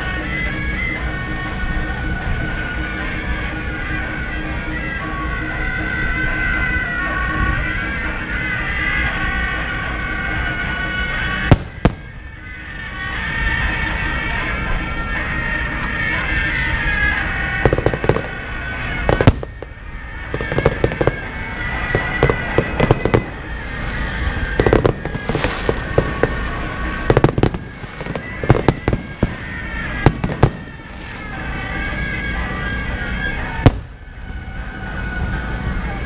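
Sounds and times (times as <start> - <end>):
background music: 0.0 - 36.0
fireworks bangs: 10.4 - 14.4, 15.5 - 34.6.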